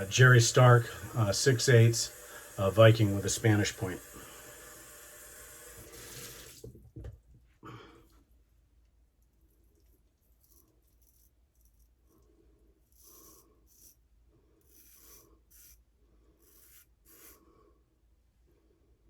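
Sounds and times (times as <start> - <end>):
razor scraping stubble: 0.0 - 6.5, 9.8 - 12.2, 12.8 - 14.0, 14.6 - 17.5.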